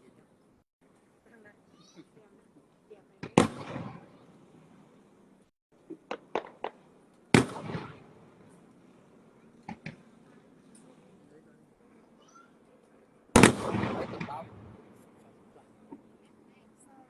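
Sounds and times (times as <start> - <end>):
fireworks popping: 2.0 - 4.3, 5.8 - 16.2
fireworks booming: 3.2 - 5.0, 5.8 - 11.2, 13.3 - 16.2.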